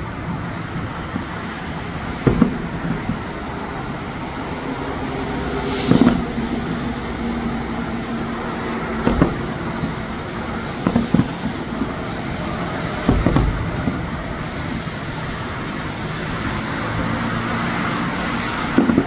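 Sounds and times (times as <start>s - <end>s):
fireworks booming: 0.0s - 19.0s.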